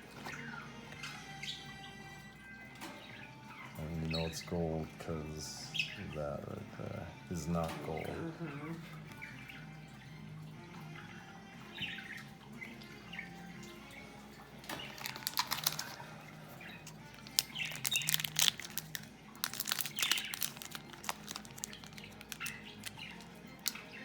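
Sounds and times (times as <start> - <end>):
foil wrappers crinkling: 14.8 - 16.2, 16.8 - 24.0.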